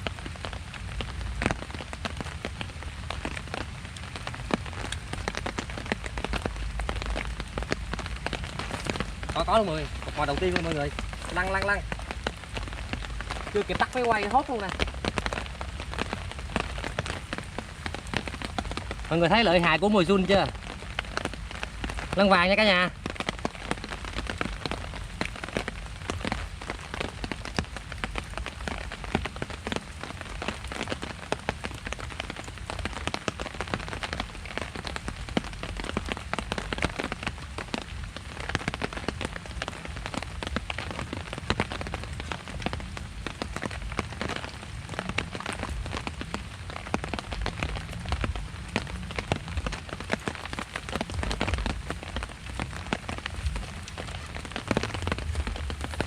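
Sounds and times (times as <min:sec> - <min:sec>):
rain falling: 0:00.0 - 0:56.0
raindrops tapping: 0:00.0 - 0:56.0
low rumble: 0:51.1 - 0:56.0.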